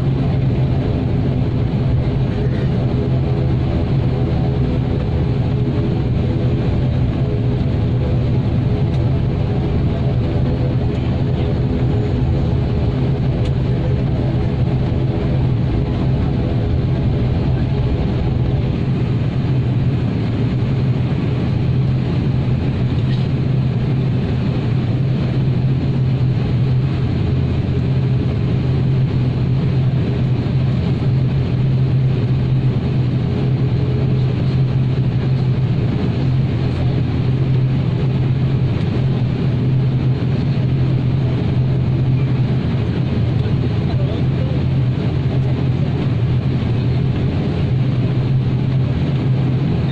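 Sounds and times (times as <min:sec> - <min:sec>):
turboprop engine drone in cabin: 0:00.0 - 0:49.9.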